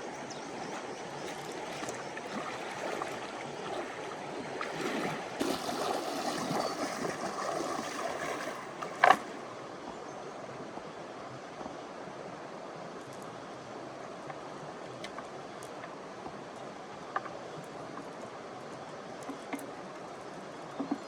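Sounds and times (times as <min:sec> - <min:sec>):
water sloshing and splashing: 0:00.0 - 0:09.6.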